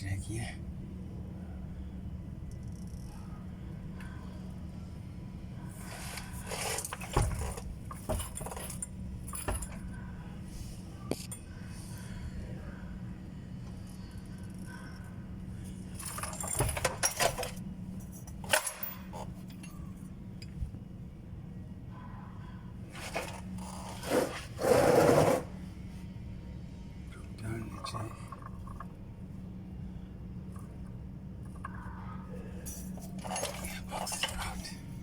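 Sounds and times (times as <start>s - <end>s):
steady low hum: 0.0s - 35.0s
metal tools clinking and jangling: 6.0s - 9.9s, 15.9s - 20.5s, 23.0s - 24.4s, 32.6s - 34.8s.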